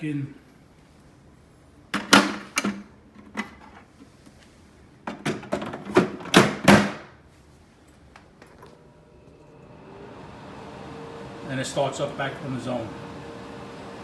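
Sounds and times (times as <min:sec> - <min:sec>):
plastic tank clunking into place: 0:05.1 - 0:07.0.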